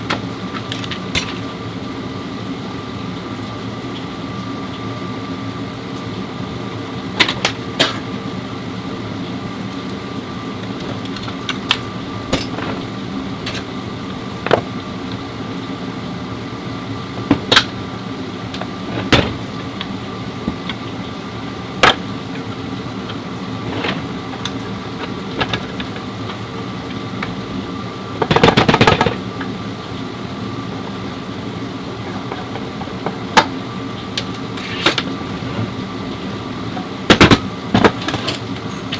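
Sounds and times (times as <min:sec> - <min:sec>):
steady machine hum: 0:00.0 - 0:38.9
metal tools clinking: 0:12.3 - 0:12.8, 0:38.1 - 0:38.9.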